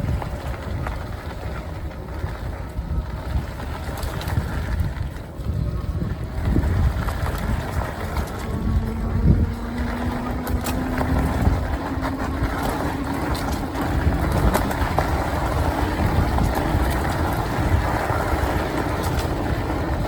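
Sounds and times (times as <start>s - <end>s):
low rumble of e-bike riding: 0.0s - 20.0s
wind buffeting microphone: 0.0s - 20.0s
steady hum: 4.4s - 20.0s.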